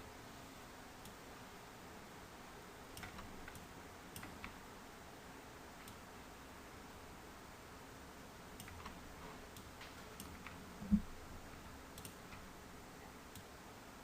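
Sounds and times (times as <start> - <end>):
computer mouse clicks: 2.9 - 4.6, 5.8 - 6.0, 8.6 - 11.1, 11.9 - 12.5, 13.3 - 13.5.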